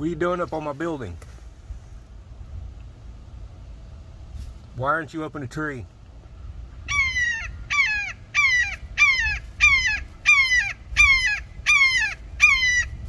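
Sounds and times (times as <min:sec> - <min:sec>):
hawk screaming: 0:06.9 - 0:13.0.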